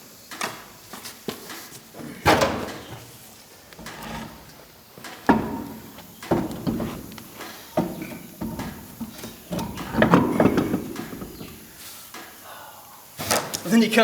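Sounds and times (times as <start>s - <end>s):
knocks and clunks: 2.0s - 3.2s, 3.8s - 11.8s
dense clatter: 3.8s - 11.8s.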